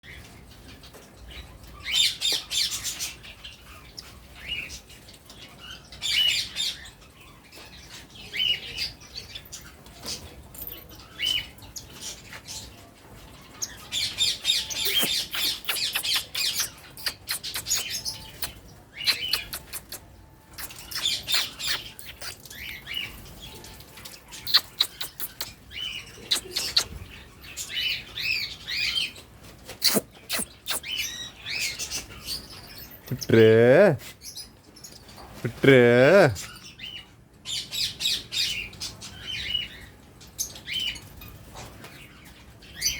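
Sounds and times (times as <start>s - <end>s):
parrot squawking and chirping: 13.5s - 34.5s.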